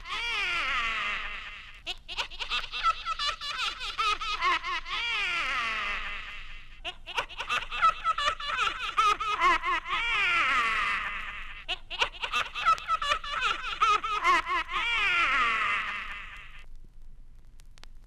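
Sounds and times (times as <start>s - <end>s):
high cackling laugh: 0.0s - 16.6s.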